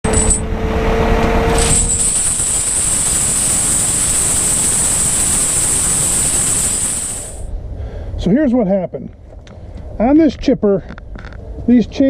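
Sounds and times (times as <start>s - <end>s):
high whine: 0.0s - 7.6s
machine rumbling: 0.0s - 7.6s.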